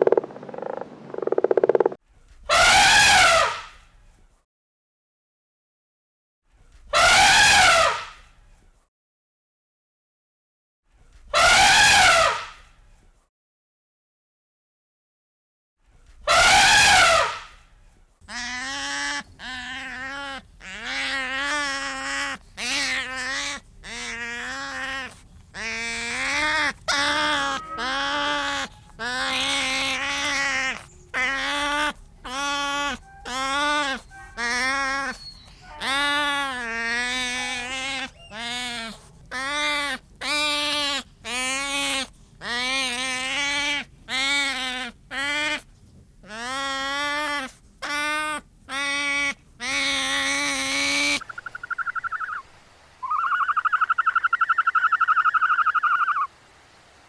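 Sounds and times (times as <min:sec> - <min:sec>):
goat bleating: 0:18.3 - 0:45.6.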